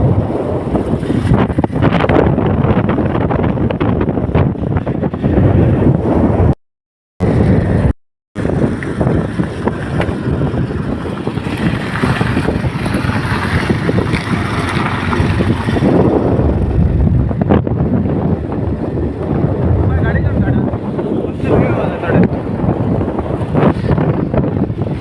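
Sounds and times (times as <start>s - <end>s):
wind buffeting microphone: 0.0s - 6.6s, 7.2s - 25.0s
steady rushing noise: 7.2s - 25.0s.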